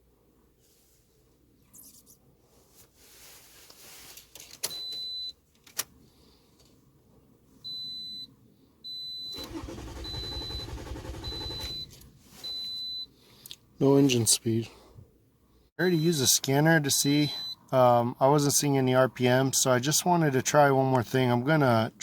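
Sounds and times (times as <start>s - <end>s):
dashboard warning chime beeping: 4.7s - 5.4s, 7.7s - 8.3s, 8.9s - 13.1s, 15.8s - 16.3s, 16.9s - 17.7s
engine starter cranking: 9.3s - 12.1s.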